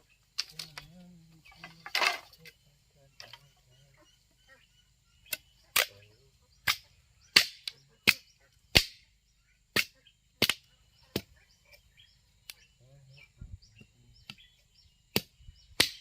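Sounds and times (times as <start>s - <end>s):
hand tool striking wood: 7.4s - 9.0s, 9.7s - 11.4s, 15.1s - 16.0s.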